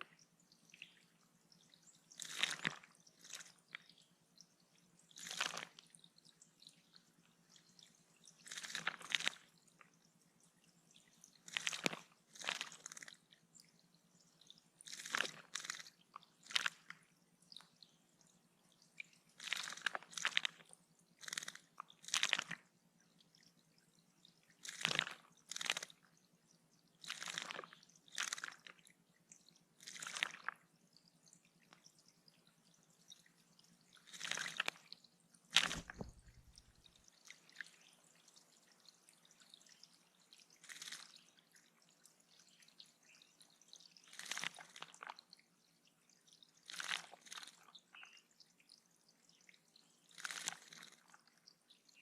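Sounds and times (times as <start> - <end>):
bird splashing in water: 35.6 - 36.7.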